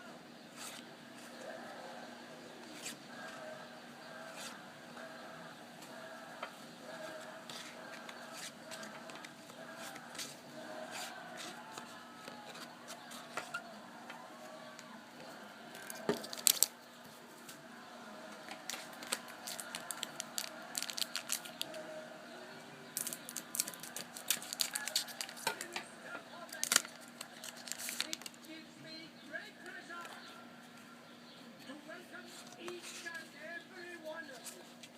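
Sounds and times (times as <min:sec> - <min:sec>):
wrapper tearing and crinkling: 0:15.8 - 0:16.7, 0:18.7 - 0:21.7, 0:23.0 - 0:25.6, 0:26.5 - 0:28.4.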